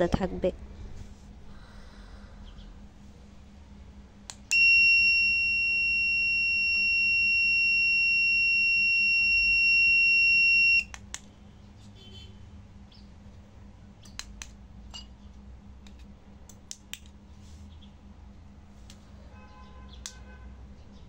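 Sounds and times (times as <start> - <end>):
electronic buzzer tone: 4.6 - 10.9.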